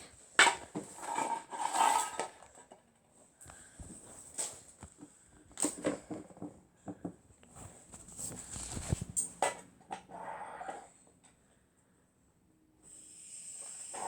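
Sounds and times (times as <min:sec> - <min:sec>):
handling rustles: 0:07.5 - 0:09.4.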